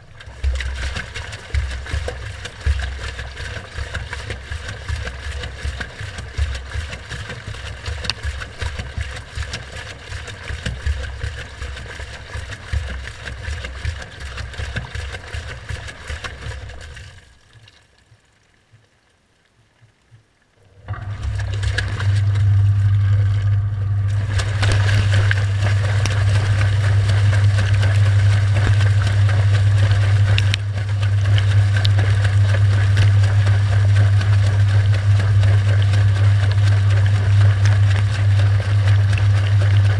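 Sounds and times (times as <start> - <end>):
loud steady low hum: 0.0 - 17.0, 20.7 - 39.9
washing machine drum rumbling: 20.9 - 39.9.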